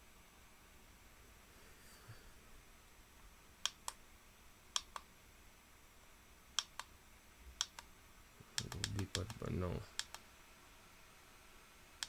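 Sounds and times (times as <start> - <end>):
sharp light clicks: 4.8 - 5.1, 6.6 - 6.9, 7.6 - 7.9, 8.6 - 9.4, 10.0 - 10.2.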